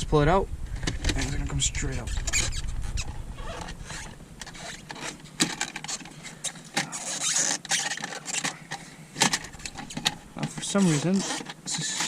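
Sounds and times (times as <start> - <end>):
plastic trim clicking and scraping: 3.5 - 12.0.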